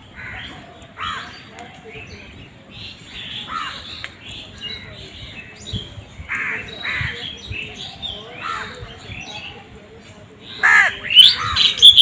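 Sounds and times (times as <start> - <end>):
crows cawing: 10.6 - 11.9.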